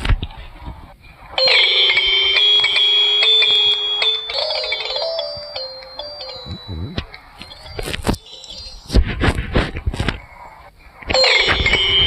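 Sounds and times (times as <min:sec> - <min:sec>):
chime-like phone ringtone: 0:01.4 - 0:09.0, 0:11.1 - 0:12.0.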